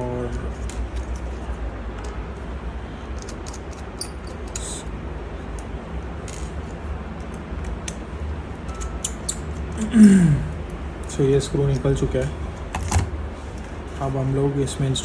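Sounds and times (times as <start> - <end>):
steady low hum: 0.0 - 15.0
screwdriver metal clicks: 3.2 - 4.7.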